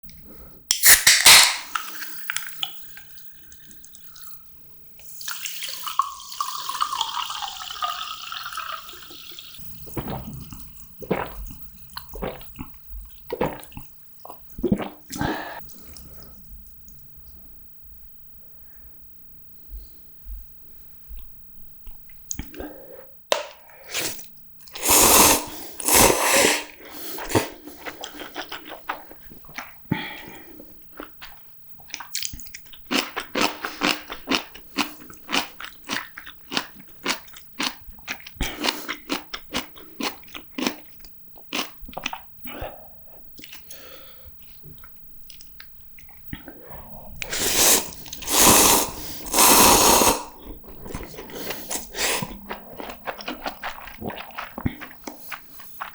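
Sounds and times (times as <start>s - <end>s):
chewing with wet clicks: 0.0s - 7.9s, 9.0s - 17.1s, 21.1s - 23.8s, 27.2s - 48.6s, 50.4s - 55.9s.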